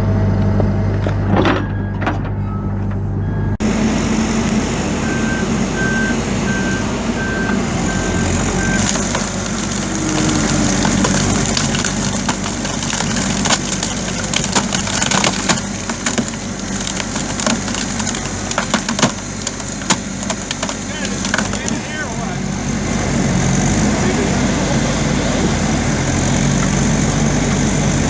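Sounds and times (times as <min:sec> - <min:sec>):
diesel engine running: 0:00.0 - 0:28.0
reversing alarm beeping: 0:01.4 - 0:03.6, 0:05.0 - 0:08.8
wood cracking and snapping: 0:08.8 - 0:22.0.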